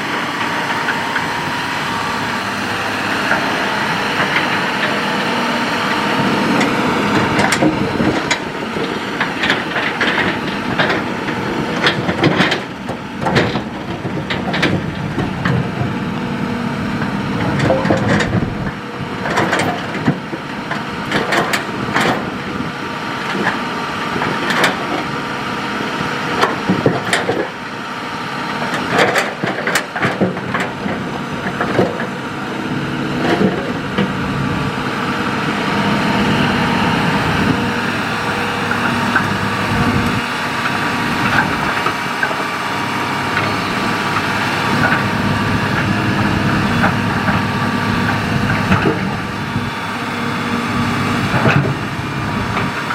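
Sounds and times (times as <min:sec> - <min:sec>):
excavator diesel engine running: 0:00.0 - 0:52.9.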